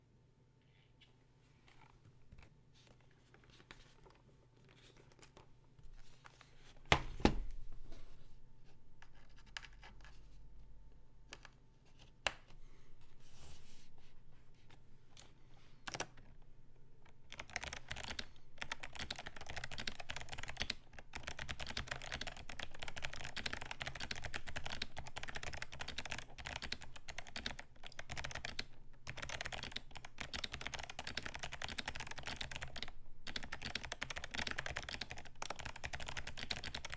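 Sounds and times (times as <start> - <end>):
clicky mechanical keyboard typing: 15.9 - 16.3, 17.1 - 36.9.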